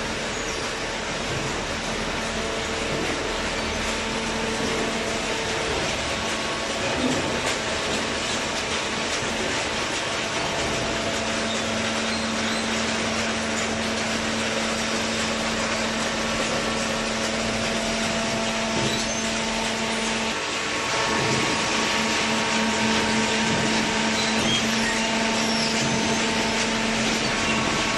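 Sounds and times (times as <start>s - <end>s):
hydraulic baling press running: 0.0s - 27.9s.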